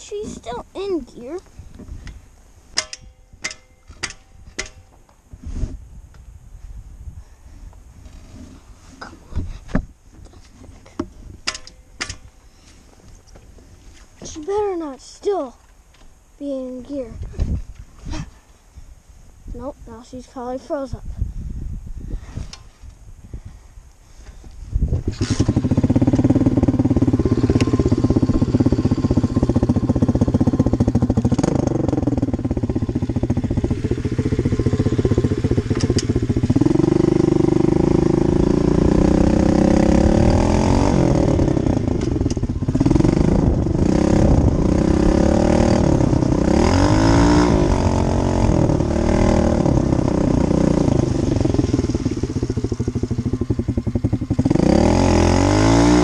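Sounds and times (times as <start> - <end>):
dirt bike engine revving: 25.1 - 56.0.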